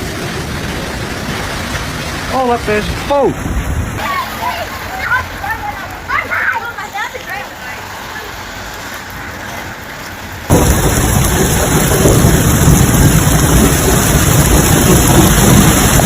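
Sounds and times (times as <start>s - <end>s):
heavy rain downpour: 0.0s - 16.0s
deep rumble: 10.5s - 16.0s.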